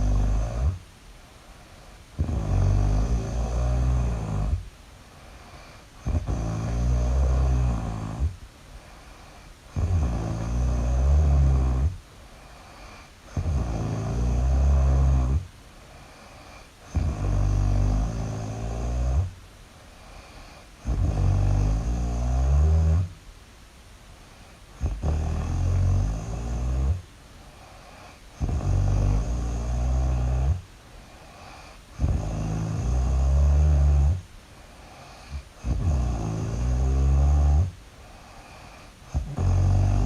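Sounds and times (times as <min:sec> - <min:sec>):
loud snoring: 0:00.0 - 0:00.8, 0:02.2 - 0:04.7, 0:05.4 - 0:19.3, 0:20.0 - 0:23.2, 0:24.7 - 0:34.2, 0:34.8 - 0:40.0
quiet breathing: 0:00.0 - 0:40.0.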